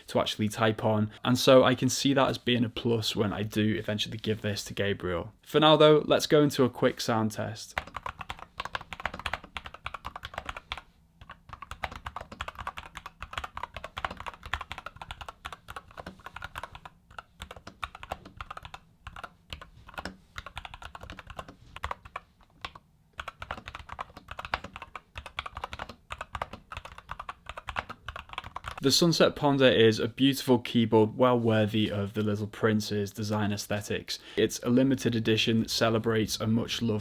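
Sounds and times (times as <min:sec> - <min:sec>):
mechanical keyboard typing: 0:07.8 - 0:28.8.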